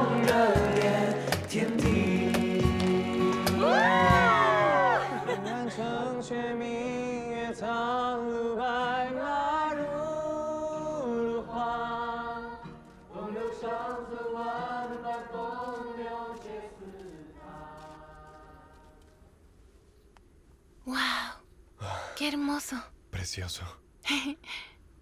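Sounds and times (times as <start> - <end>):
person singing wordless notes: 0.0 - 6.3.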